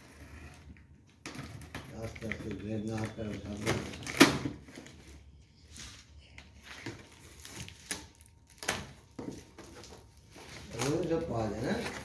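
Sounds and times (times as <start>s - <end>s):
packaging rustle: 1.8s - 5.4s, 6.0s - 12.0s.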